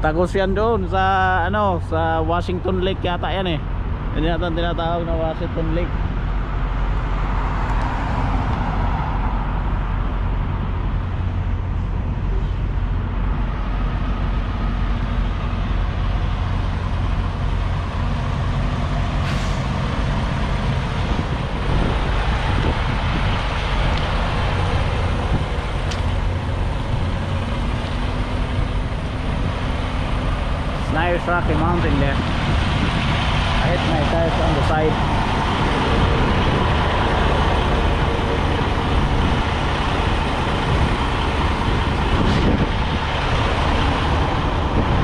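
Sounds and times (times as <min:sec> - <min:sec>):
diesel truck engine rumbling: 0:00.0 - 0:45.0.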